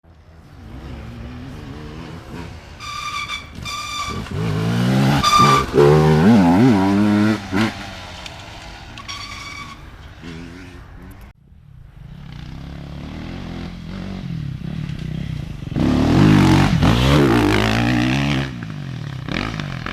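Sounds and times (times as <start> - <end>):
racing engines revving: 0.2 - 11.3.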